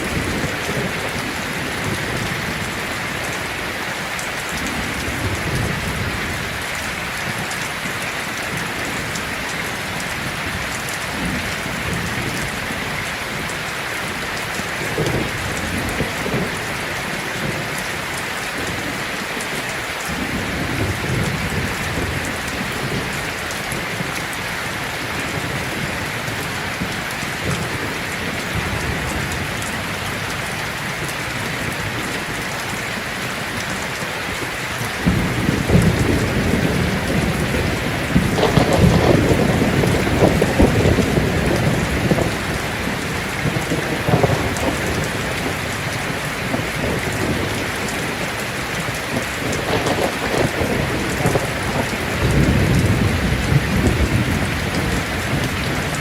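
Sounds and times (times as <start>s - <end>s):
heavy rain on a tin roof: 0.0s - 56.0s
low rumbles of thunder: 35.0s - 56.0s.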